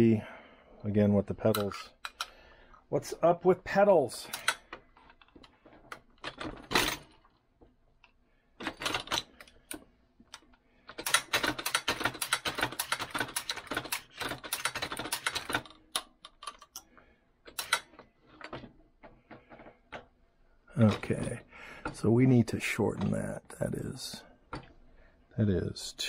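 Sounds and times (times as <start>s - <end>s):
reloading press clicking and rattling: 4.2s - 7.3s, 8.6s - 16.8s, 17.4s - 20.1s.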